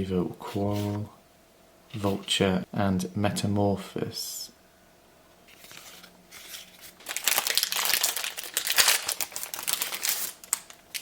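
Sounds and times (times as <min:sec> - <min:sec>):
wrapper crinkling: 0:05.6 - 0:11.0.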